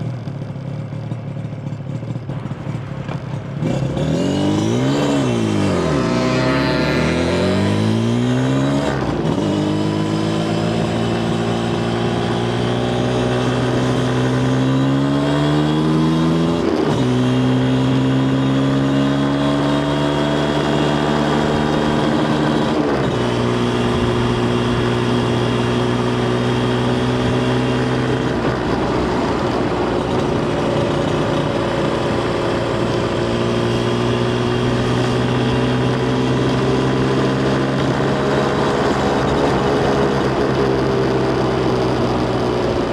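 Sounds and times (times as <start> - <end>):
motorcycle engine running: 0.0 - 42.9.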